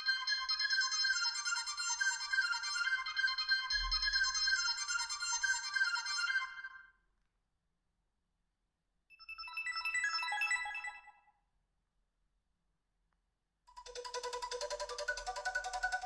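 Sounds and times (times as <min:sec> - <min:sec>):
phone ringtone tunes: 0:09.2 - 0:11.2.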